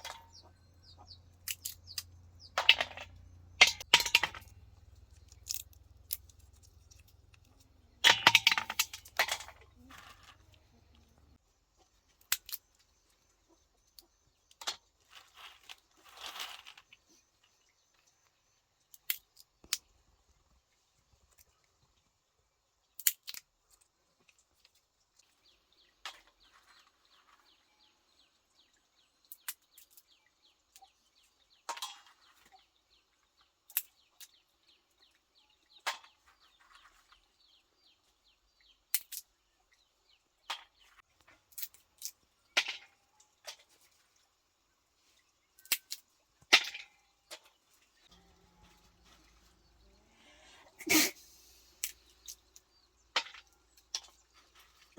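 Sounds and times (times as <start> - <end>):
chickens clucking: 0.0 - 3.8.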